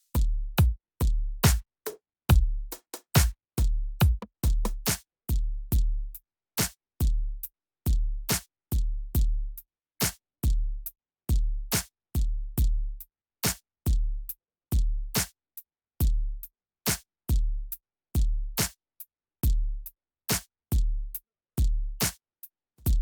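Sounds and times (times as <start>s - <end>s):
drum-machine beat: 0.0s - 1.6s, 2.3s - 6.0s, 22.8s - 23.0s.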